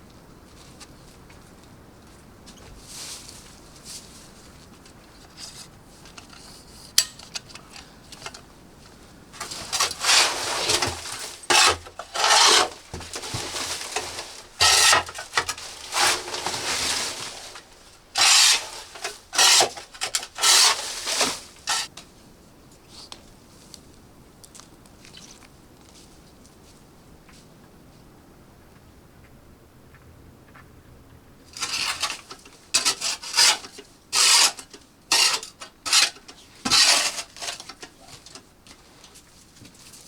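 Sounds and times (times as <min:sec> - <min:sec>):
rough scraping strokes: 0:09.4 - 0:21.9, 0:31.6 - 0:37.9.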